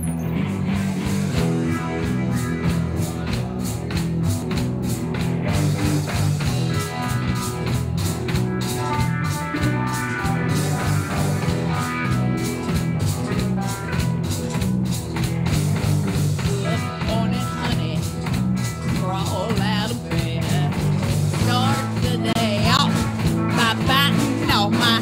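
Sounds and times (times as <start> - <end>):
electric guitar: 0.0 - 25.0
rock band playing: 0.0 - 25.0
drum kit steady beat: 0.7 - 25.0.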